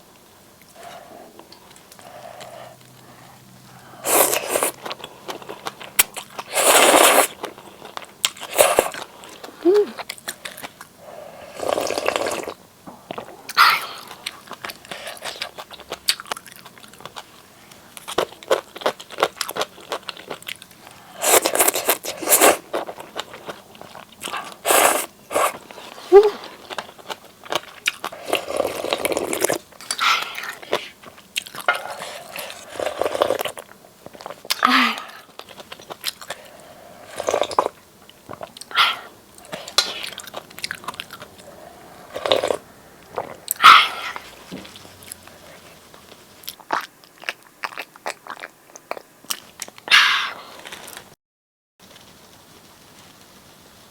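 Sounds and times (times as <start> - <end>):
slurping noodles: 4.0 - 5.6, 6.4 - 7.5, 8.4 - 9.1, 11.1 - 12.6, 21.1 - 23.0, 24.3 - 26.8, 28.1 - 31.0, 31.7 - 33.6, 36.4 - 37.8, 41.4 - 44.6.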